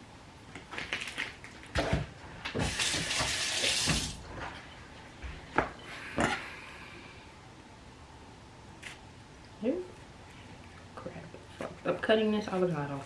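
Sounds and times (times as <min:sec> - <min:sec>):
kitchen tap running: 0:02.6 - 0:04.2.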